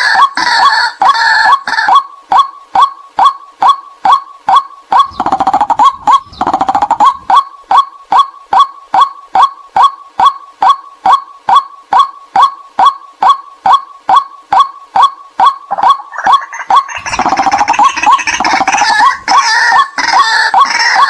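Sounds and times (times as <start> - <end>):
waterhen sharp kwak calls: 4.9 - 7.5, 15.4 - 21.0
fast rattling bird chatter: 5.0 - 7.4, 15.7 - 21.0.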